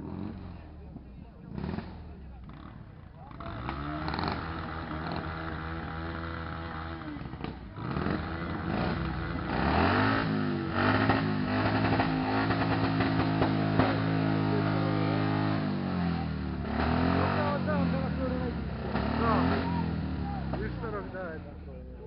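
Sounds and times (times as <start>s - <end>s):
motorcycle engine revving: 0.0s - 22.0s.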